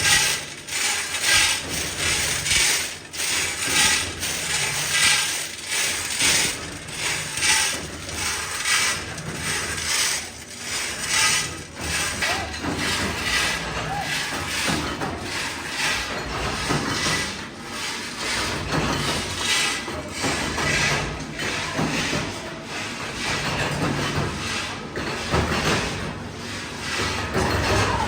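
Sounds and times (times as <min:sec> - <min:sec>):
machinery clatter: 0:00.0 - 0:28.0.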